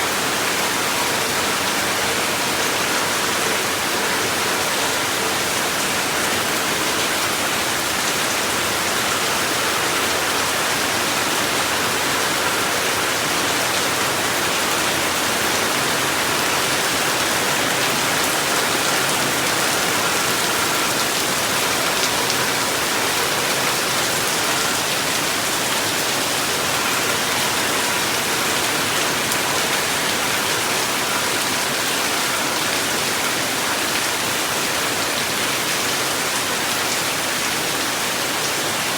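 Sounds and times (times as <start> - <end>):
steady rain falling: 0.0 - 38.9.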